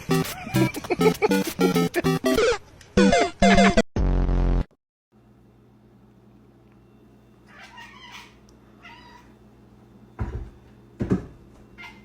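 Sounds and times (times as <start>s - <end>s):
cat meowing: 7.5s - 9.4s.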